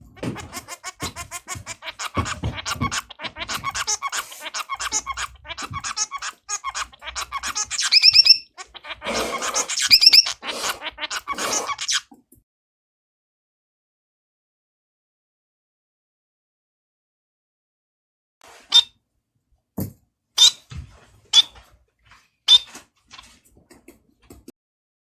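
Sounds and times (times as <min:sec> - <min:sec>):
finch song: 0:00.1 - 0:12.0.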